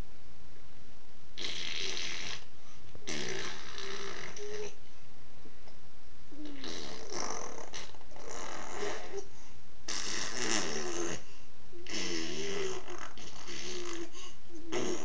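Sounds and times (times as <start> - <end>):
baby blowing raspberries: 1.4 - 4.8, 6.4 - 9.3, 9.9 - 15.0.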